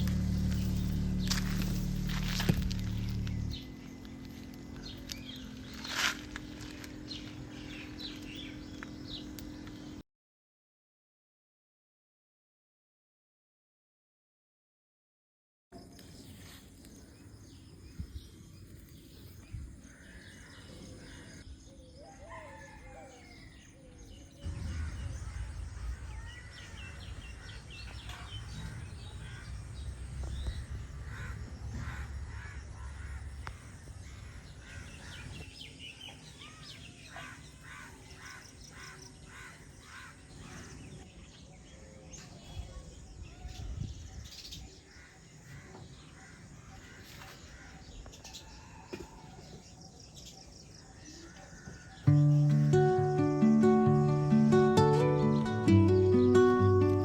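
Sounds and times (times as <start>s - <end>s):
low rumble: 0.0s - 8.5s, 24.4s - 34.8s
birds calling and chirping: 0.0s - 10.0s, 15.8s - 57.0s.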